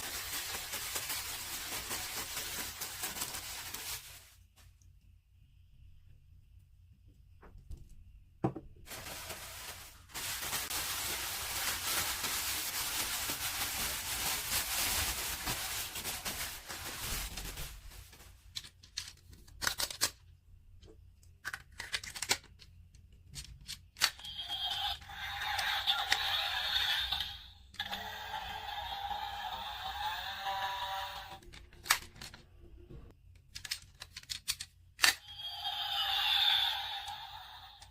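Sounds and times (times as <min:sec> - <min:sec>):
packaging ripping and crinkling: 0:00.0 - 0:04.4, 0:08.9 - 0:20.2.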